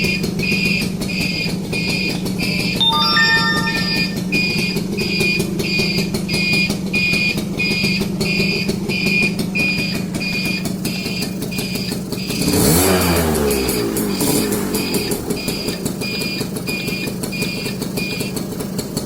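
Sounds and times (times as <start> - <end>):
two-stroke engine idling: 0.0 - 2.8, 4.6 - 19.0
high pulsing beep: 2.8 - 4.5.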